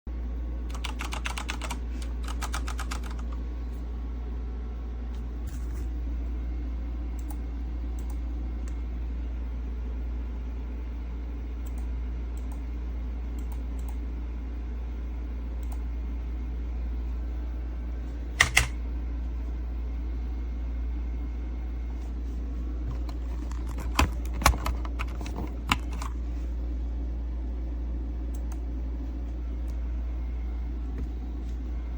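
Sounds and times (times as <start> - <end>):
steady low hum: 0.1 - 31.9
mechanical keyboard typing: 0.7 - 3.4, 18.4 - 18.8, 23.0 - 26.2.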